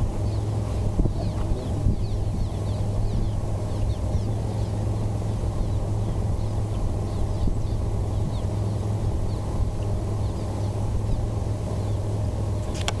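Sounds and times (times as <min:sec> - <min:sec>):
steady low hum: 0:00.0 - 0:13.0
swallows twittering: 0:00.0 - 0:13.0.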